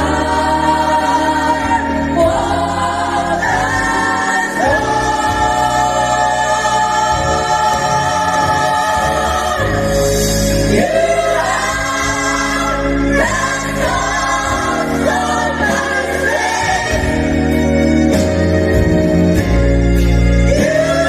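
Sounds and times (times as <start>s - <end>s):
gospel choir singing: 0.0s - 21.0s.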